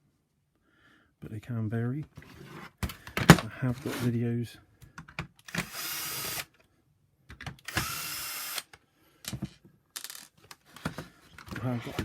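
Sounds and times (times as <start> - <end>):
power screwdriver running: 5.5 - 6.5, 7.6 - 8.7.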